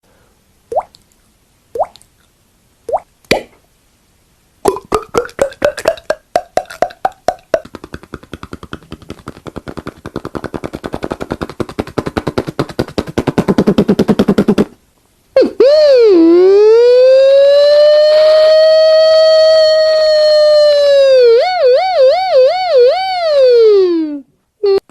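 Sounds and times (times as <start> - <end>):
mouth popping clicks: 0.7 - 1.1, 1.8 - 2.3, 2.9 - 3.6, 4.6 - 14.8
mouth water-drop plops: 1.8 - 2.1, 4.7 - 8.0
vocal siren imitation: 15.4 - 24.9.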